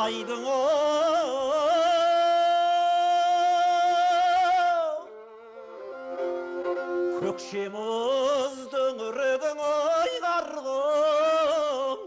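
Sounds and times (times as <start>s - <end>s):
steady instrumental accompaniment: 5.2s - 8.0s.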